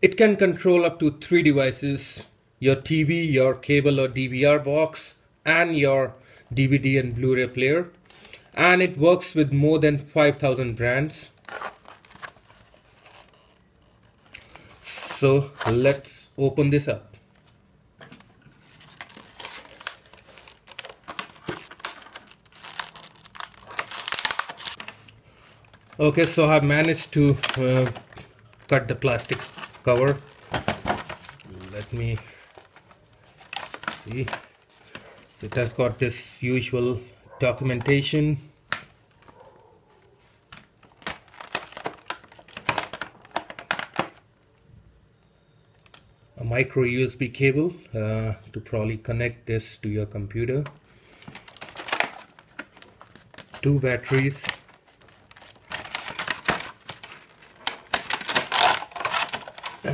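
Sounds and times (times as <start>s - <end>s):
plastic packaging crinkling: 11.3s - 15.8s, 18.2s - 36.0s, 38.9s - 44.2s, 50.7s - 59.9s.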